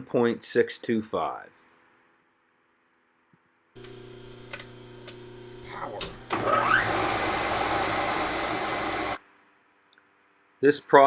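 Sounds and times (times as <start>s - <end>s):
milling machine motor whir: 3.8s - 9.2s.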